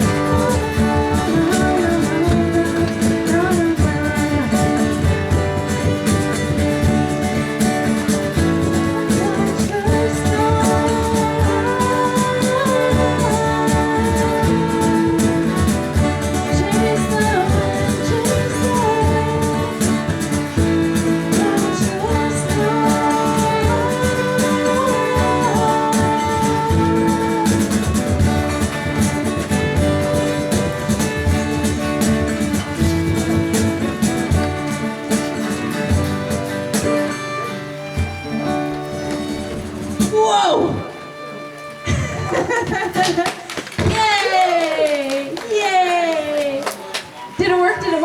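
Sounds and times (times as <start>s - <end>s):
person singing: 0.0s - 37.7s
guitar and other instruments: 0.0s - 48.0s.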